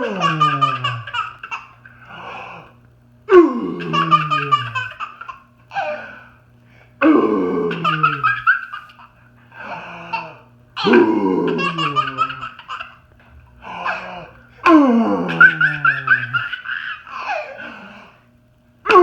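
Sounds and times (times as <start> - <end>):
baby belly-laughing: 0.0 - 1.8, 3.8 - 6.1, 7.7 - 9.1, 10.1 - 13.0, 15.3 - 17.6
man making zombie noises: 3.3 - 4.8, 7.0 - 8.3, 10.8 - 12.4, 13.7 - 16.2.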